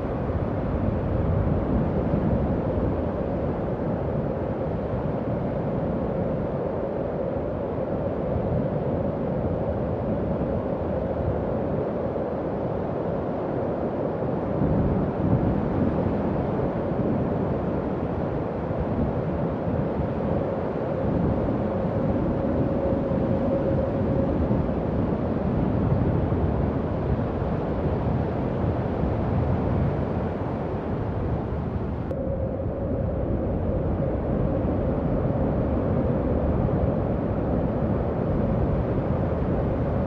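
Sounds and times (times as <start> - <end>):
wind howling: 18.1 - 40.0.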